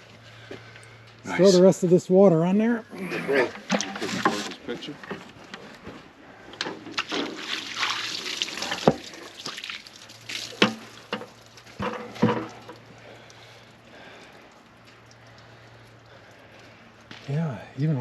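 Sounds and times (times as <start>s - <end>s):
water splashing onto wood: 3.6s - 4.7s, 6.6s - 17.3s.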